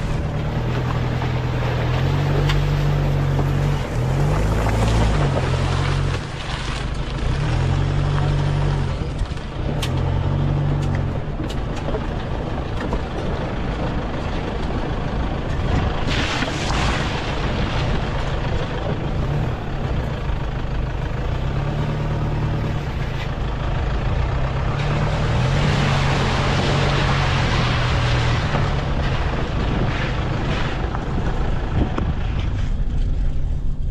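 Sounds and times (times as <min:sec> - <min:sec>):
wind buffeting microphone: 0:27.8 - 0:33.9.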